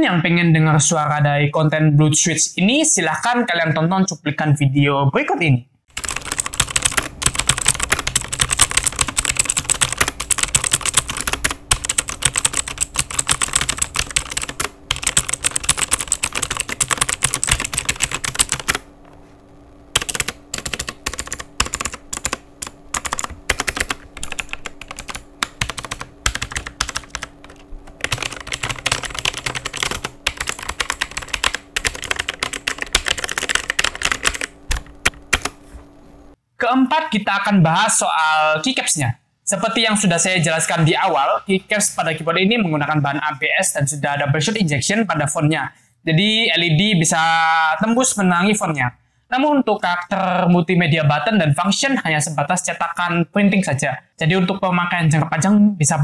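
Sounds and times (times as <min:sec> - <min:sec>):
mechanical keyboard typing: 0:05.9 - 0:18.8, 0:19.9 - 0:35.6.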